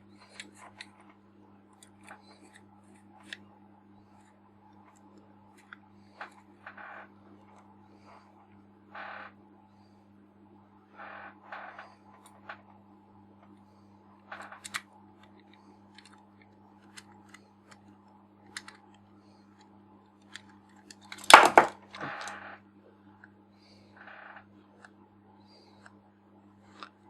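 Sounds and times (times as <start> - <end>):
lens parts and tools clicking: 14.4 - 16.2.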